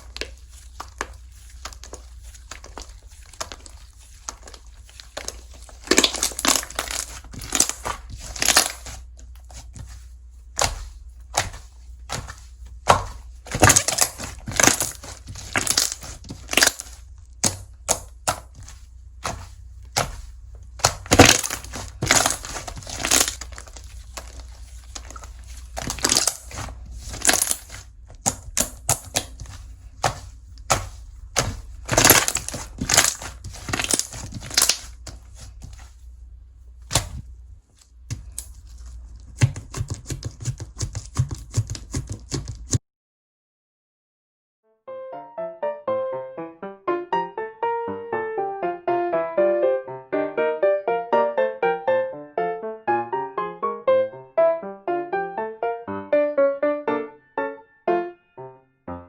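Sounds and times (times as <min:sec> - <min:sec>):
slime squishing and popping: 0:00.0 - 0:35.9.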